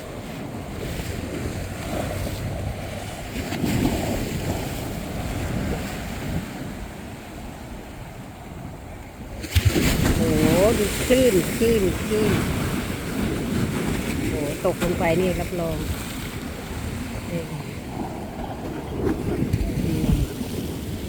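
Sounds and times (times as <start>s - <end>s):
waves breaking on beach: 0.0s - 21.0s
wind buffeting microphone: 0.0s - 21.0s.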